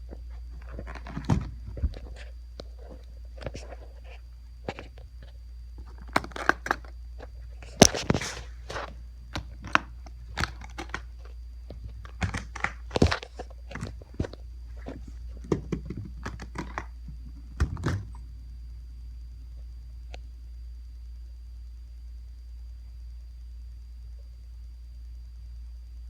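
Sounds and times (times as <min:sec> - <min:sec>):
steady low hum: 0:00.0 - 0:26.0
packaging crinkling and tearing: 0:07.6 - 0:15.0.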